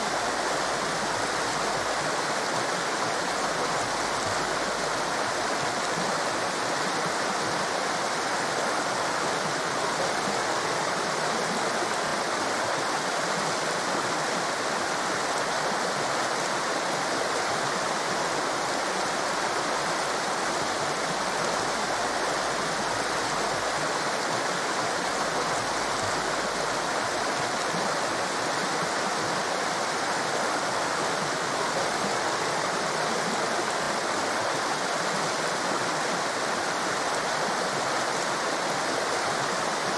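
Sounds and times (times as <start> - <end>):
torrent of water rushing: 0.0 - 39.9.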